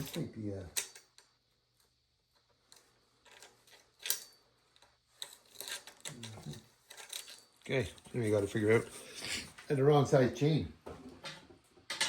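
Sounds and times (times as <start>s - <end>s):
saw chain clicking and rattling: 3.2s - 4.5s, 5.1s - 8.8s.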